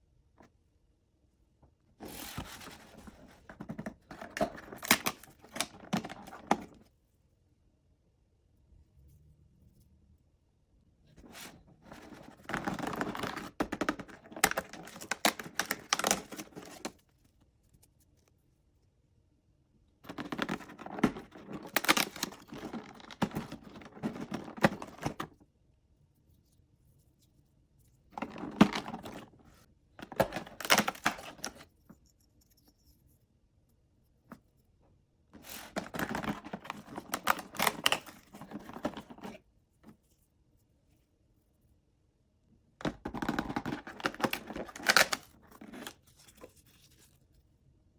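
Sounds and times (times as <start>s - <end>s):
packaging crinkling and tearing: 2.0s - 6.7s, 11.3s - 17.0s, 20.1s - 25.2s, 30.0s - 31.6s, 35.4s - 39.4s, 43.1s - 47.0s.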